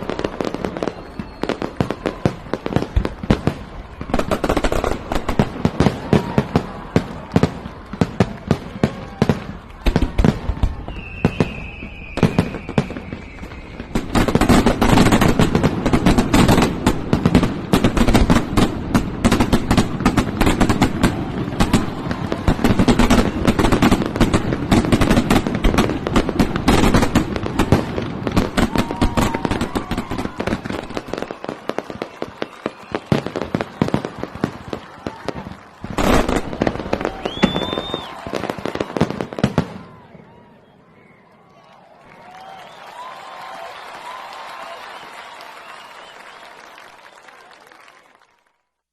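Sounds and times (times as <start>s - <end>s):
fireworks bangs and crackling: 0.0s - 40.8s
falling firework whistle: 0.0s - 48.2s.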